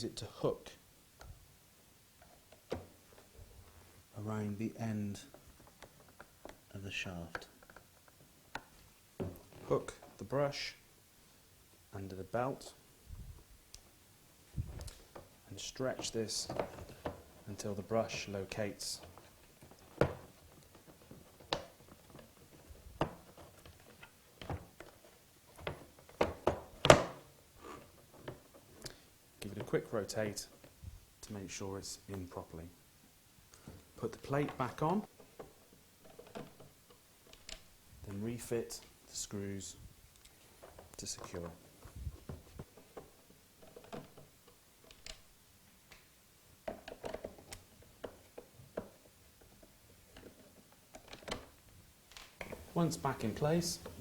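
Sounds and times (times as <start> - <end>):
plastic clicks and knocks: 45.9 - 54.0.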